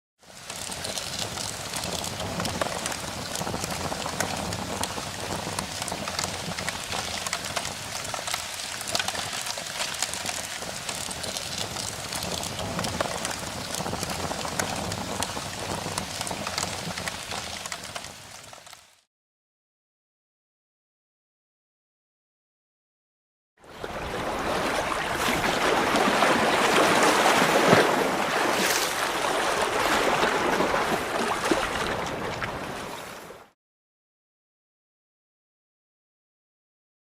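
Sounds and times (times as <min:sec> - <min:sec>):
rain falling: 0:00.3 - 0:19.1.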